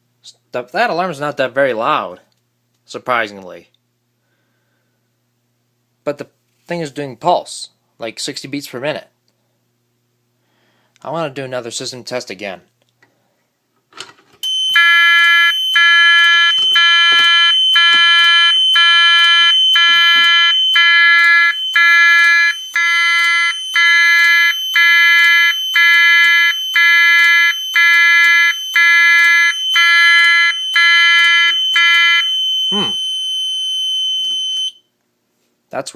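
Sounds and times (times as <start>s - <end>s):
pulsing alarm tone: 14.4s - 34.8s
steady high-pitched alarm tone: 14.4s - 34.9s.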